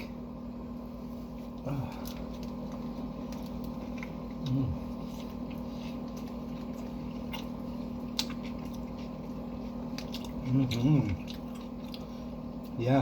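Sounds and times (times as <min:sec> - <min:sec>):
person chewing sandwich: 0:00.0 - 0:12.8.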